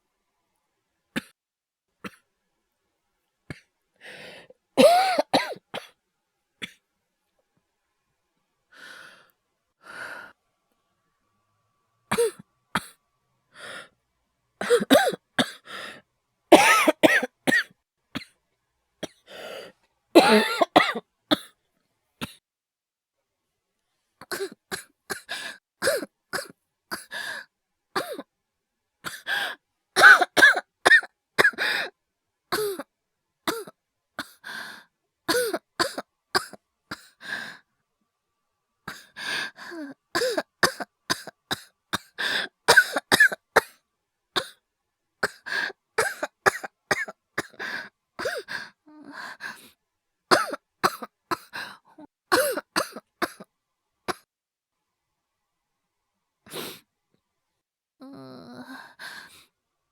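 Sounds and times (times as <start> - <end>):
man coughing: 4.8 - 5.6, 16.6 - 17.6, 20.2 - 21.0.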